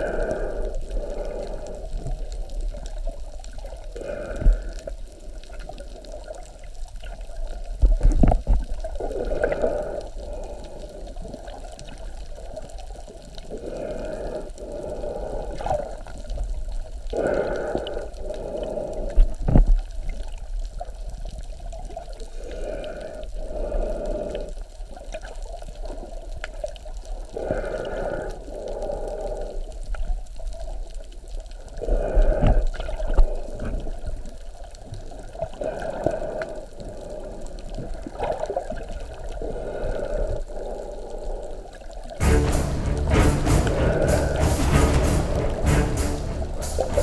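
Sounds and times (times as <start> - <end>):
low rumble: 42.2 - 47.0.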